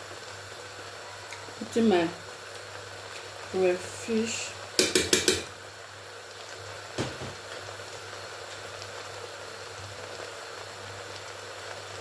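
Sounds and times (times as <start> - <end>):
pot simmering with a hiss: 0.0 - 12.0.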